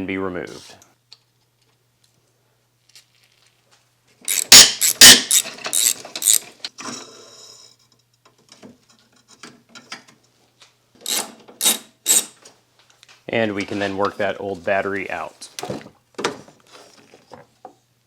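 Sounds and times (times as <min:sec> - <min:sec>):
ratchet wrench clicking: 0:04.3 - 0:06.4, 0:11.1 - 0:12.3.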